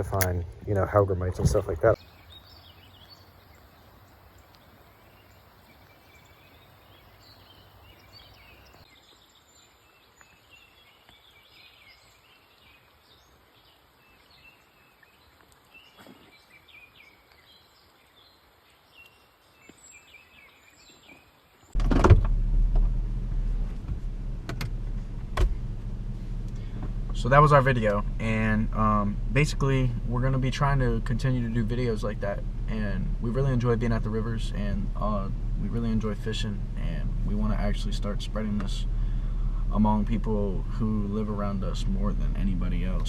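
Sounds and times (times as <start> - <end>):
bird chirps: 1.9 - 21.8
low engine hum inside car: 21.8 - 43.0.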